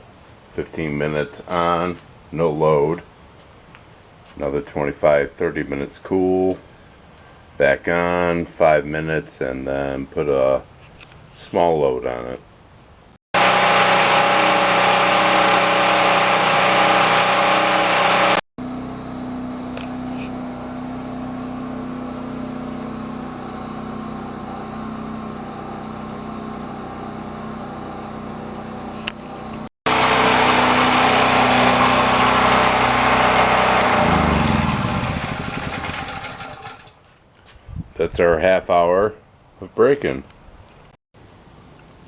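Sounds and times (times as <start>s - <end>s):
engine running down: 13.4s - 37.0s
generator engine running: 13.4s - 37.0s.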